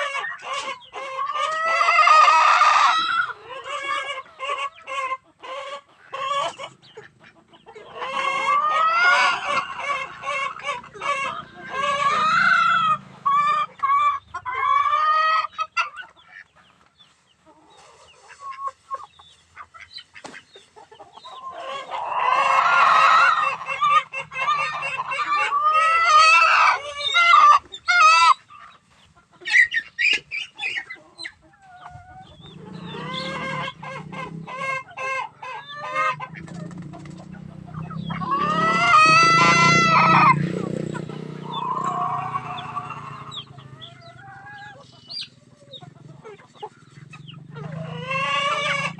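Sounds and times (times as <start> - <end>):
chickens clucking and squawking: 0.0 - 48.9
rooster crowing: 8.1 - 13.0, 38.2 - 40.5, 41.4 - 43.8.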